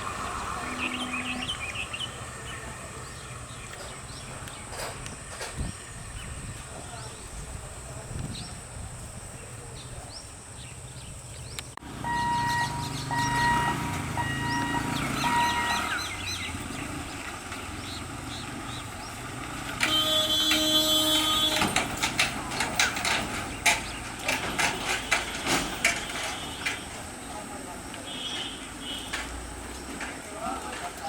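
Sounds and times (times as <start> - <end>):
horn sounding: 0.0 - 2.2, 11.8 - 16.8, 19.6 - 23.0, 24.7 - 27.1
traffic noise: 0.0 - 31.0
level crossing beeping: 11.9 - 16.2
sharp clicks and knocks: 21.5 - 27.0.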